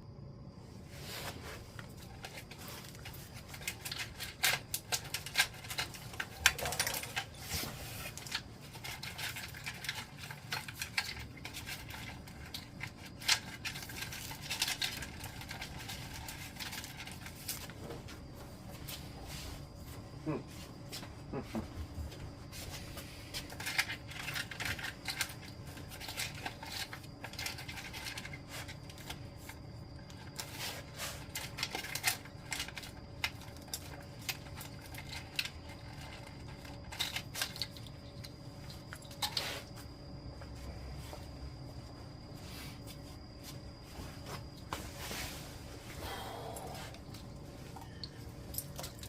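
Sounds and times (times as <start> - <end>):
faint steady hum: 0.0 - 49.0
small clicks and rustles of hands: 1.8 - 17.8, 23.3 - 39.9.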